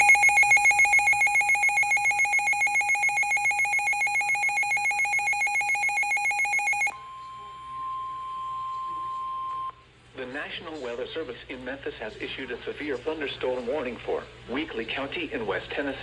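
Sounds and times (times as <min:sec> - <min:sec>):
rapidly pulsing electronic beep: 0:00.0 - 0:06.9
steady warning alarm tone: 0:00.0 - 0:07.1.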